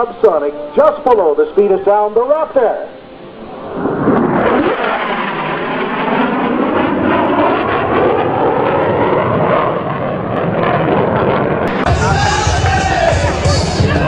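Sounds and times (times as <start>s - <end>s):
jet fighter passing: 0.0s - 14.0s.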